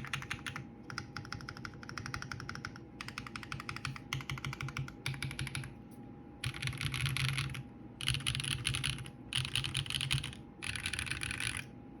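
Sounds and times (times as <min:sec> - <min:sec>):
fast typing on mechanical keyboard: 0:00.0 - 0:05.7, 0:06.4 - 0:11.7.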